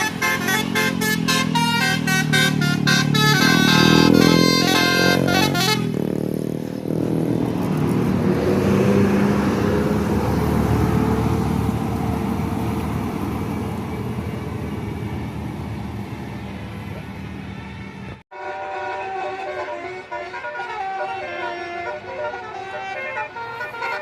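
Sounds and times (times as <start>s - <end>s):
multi-tone air horn melody: 0.0s - 6.5s, 17.5s - 24.0s
bus engine and tyres passing: 0.0s - 24.0s.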